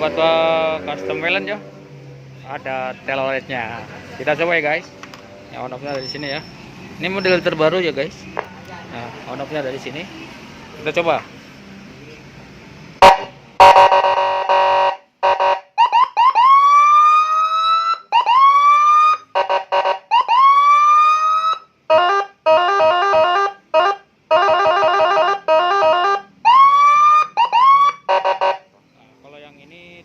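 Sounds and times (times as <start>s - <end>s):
electronic police siren: 13.0s - 28.6s.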